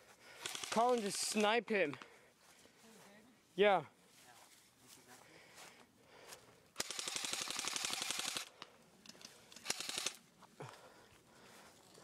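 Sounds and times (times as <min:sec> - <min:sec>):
airsoft rifle firing bursts: 0:00.4 - 0:01.4, 0:06.8 - 0:08.5, 0:09.5 - 0:10.2.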